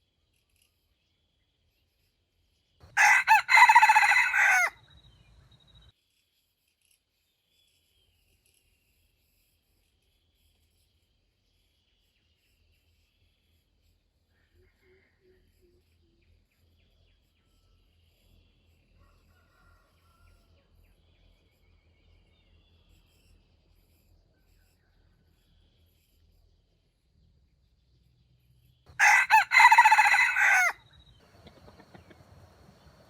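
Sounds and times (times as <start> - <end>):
rooster crowing: 3.0 - 4.8, 29.0 - 30.8.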